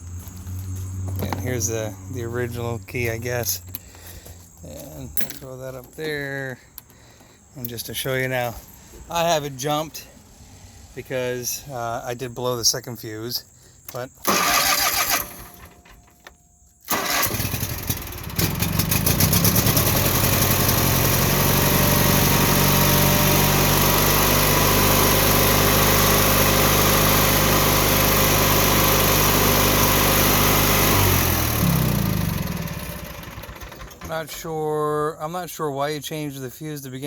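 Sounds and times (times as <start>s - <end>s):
mower engine running: 0.0s - 4.0s, 14.2s - 16.0s, 16.9s - 34.4s
mower engine starter cranking: 13.9s - 34.5s
engine winding down: 14.2s - 15.9s, 16.9s - 34.4s.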